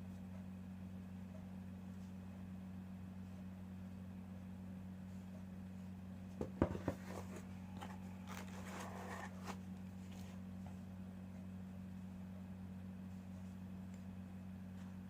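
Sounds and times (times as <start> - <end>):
low electrical hum: 0.0 - 15.0
packaging crinkling: 7.8 - 9.6.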